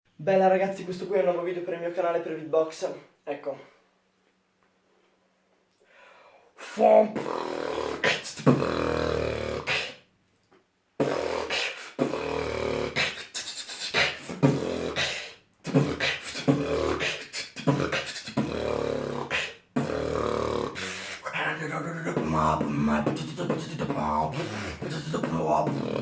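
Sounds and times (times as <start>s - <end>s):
person beatboxing: 6.6s - 10.1s, 11.0s - 26.0s.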